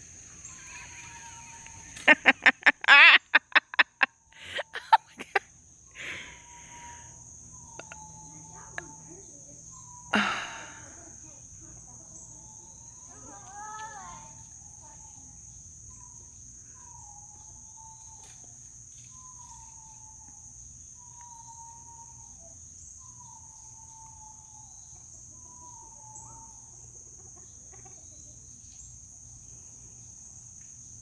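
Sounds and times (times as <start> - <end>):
insect chorus: 0.0 - 31.0
faint falling whistled calls: 7.6 - 9.0, 15.9 - 20.4.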